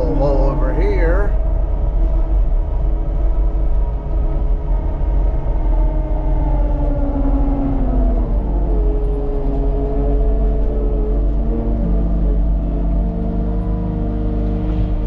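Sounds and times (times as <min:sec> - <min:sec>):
skid steer diesel engine running: 0:00.0 - 0:02.4.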